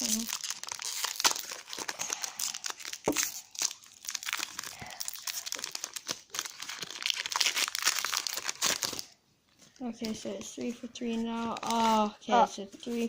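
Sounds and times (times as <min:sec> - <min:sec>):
foil wrapper crinkling and tearing: 0:00.0 - 0:09.2.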